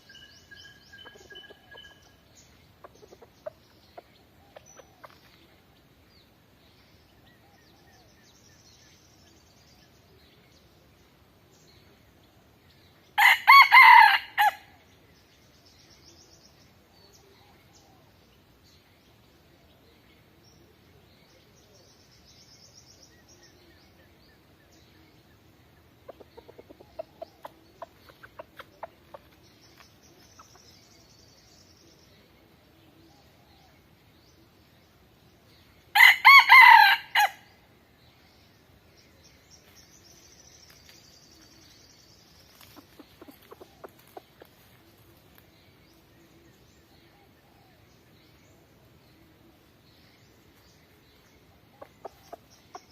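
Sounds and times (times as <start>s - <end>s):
rooster crowing: 13.2s - 14.6s, 36.0s - 37.4s.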